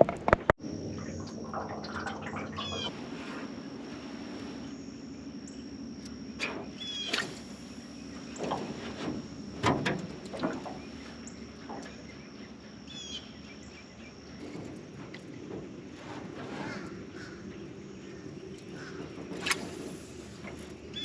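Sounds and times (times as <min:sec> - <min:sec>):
steady low hum: 0:00.0 - 0:21.0
birds chirping: 0:00.7 - 0:16.0, 0:16.6 - 0:21.0
splashes: 0:01.0 - 0:05.4, 0:06.4 - 0:12.0, 0:18.7 - 0:21.0.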